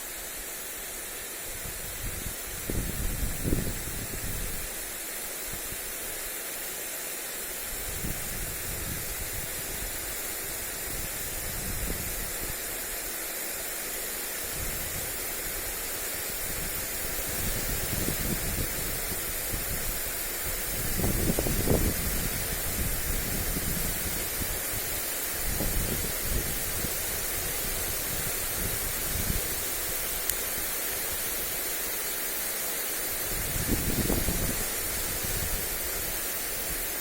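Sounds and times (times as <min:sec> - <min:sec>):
lawn sprinkler spraying water: 0:00.0 - 0:37.0
wind buffeting microphone: 0:01.5 - 0:04.6, 0:10.7 - 0:12.6, 0:16.4 - 0:30.7, 0:33.2 - 0:36.9.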